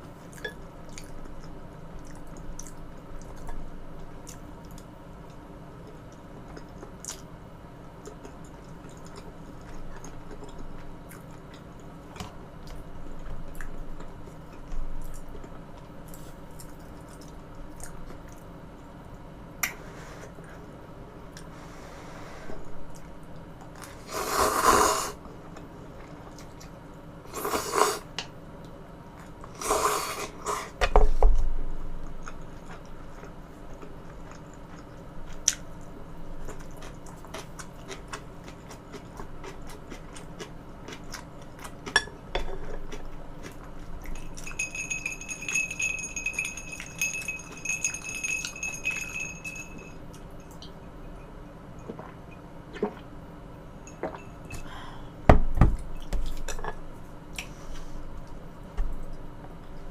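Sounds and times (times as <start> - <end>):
utensils clinking on dishes: 44.1 - 51.9.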